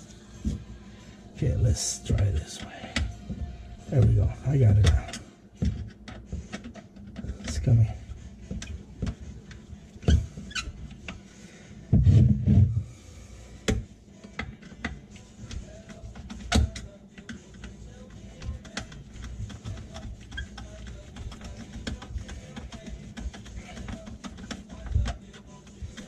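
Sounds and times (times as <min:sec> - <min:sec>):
screwdriver turning a screw: 0:14.2 - 0:26.0.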